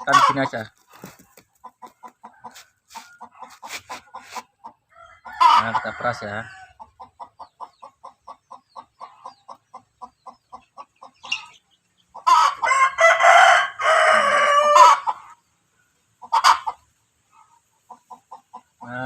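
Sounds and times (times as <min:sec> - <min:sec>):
chicken squawk: 0:00.0 - 0:06.9, 0:10.3 - 0:15.4, 0:16.2 - 0:19.0
chicken clucking softly: 0:00.0 - 0:12.7, 0:14.2 - 0:19.0
rooster crowing: 0:04.9 - 0:06.8, 0:12.3 - 0:15.2.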